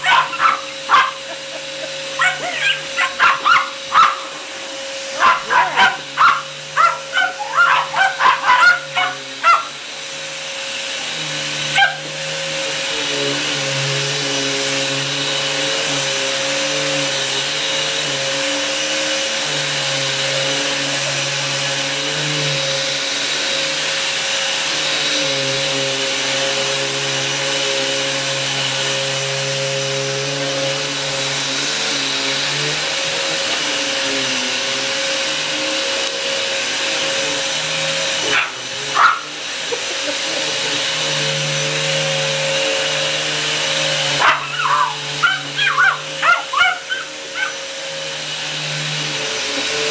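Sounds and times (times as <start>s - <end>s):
dog barking: 0.0s - 1.4s, 2.2s - 4.3s, 5.2s - 9.7s, 11.8s - 12.1s, 38.3s - 39.3s, 44.2s - 47.6s
vacuum cleaner running: 0.0s - 49.9s.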